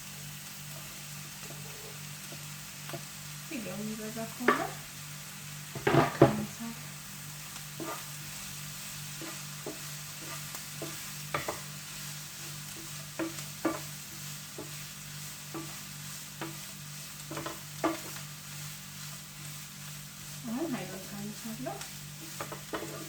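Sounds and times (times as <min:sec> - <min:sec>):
chicken and onions sizzling in pan: 0:00.0 - 0:23.0
utensil scraping and knocking pan: 0:22.3 - 0:23.0.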